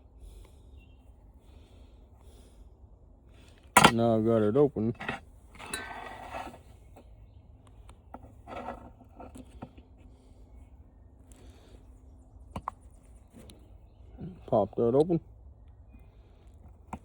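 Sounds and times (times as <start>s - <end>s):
tool scraping plastic: 8.2s - 9.8s.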